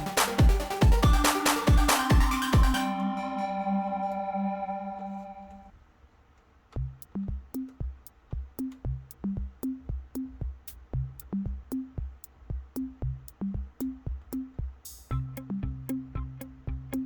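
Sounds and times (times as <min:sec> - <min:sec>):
drum machine beat: 0:00.0 - 0:03.0, 0:06.8 - 0:17.0
repeating bass line: 0:00.0 - 0:05.5, 0:06.8 - 0:17.0.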